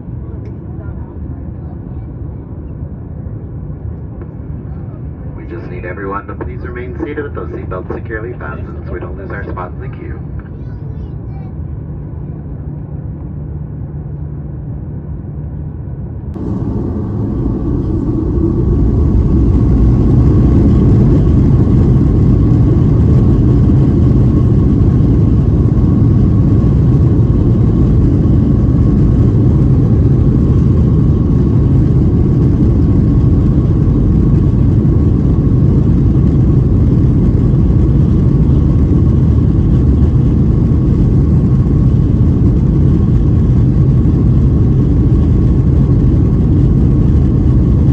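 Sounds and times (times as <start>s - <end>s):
thin high engine whine: 4.2s - 10.9s, 11.6s - 47.9s
jet engines roaring: 4.3s - 10.5s, 16.3s - 47.9s.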